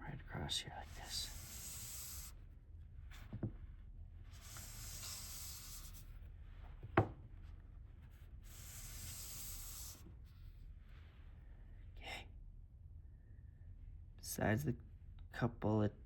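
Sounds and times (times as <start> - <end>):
sharpening stone rasping on steel: 0.9 - 2.4, 4.4 - 6.0, 8.5 - 10.0.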